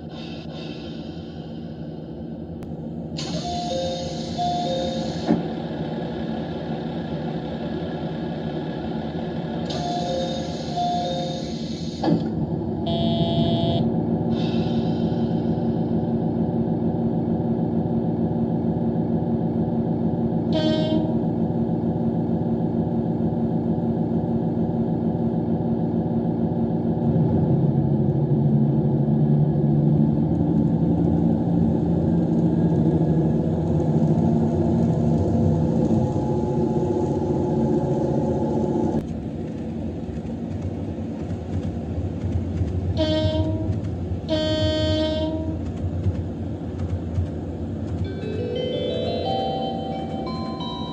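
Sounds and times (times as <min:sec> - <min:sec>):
diesel railcar engine running: 0:00.0 - 0:50.9
train horn toots: 0:12.8 - 0:13.9, 0:20.5 - 0:21.3, 0:42.9 - 0:45.7.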